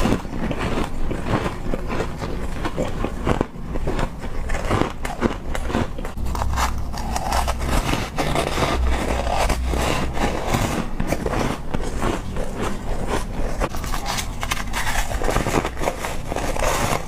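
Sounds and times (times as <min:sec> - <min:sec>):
ice being chewed: 0:00.0 - 0:17.0
low rumble: 0:06.0 - 0:16.6.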